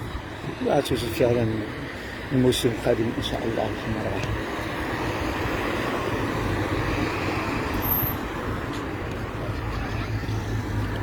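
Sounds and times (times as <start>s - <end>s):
outdoor background noise rumble: 0.0s - 11.0s.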